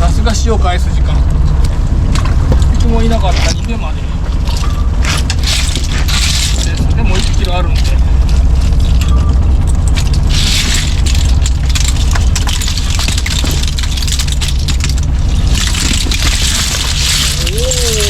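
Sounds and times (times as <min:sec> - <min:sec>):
boat engine running: 0:00.0 - 0:18.0
wet net splashing and scraping: 0:04.3 - 0:09.0, 0:09.6 - 0:18.0.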